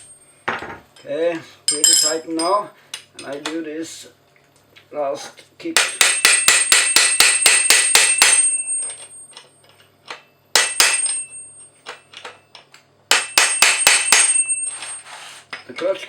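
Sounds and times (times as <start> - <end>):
hammer striking a wrench: 5.8 - 15.0.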